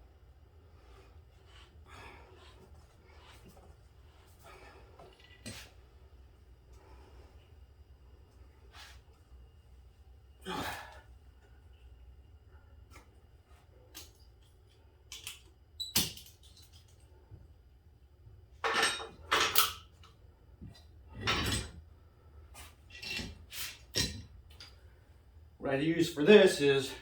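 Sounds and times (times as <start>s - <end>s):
tools and metal parts clinking: 18.6s - 19.8s, 21.2s - 21.8s, 22.9s - 24.8s.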